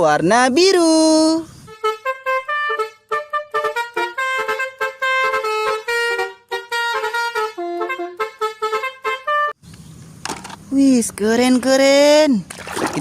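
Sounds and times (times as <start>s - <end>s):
multi-tone bus horn tune: 1.6s - 9.6s.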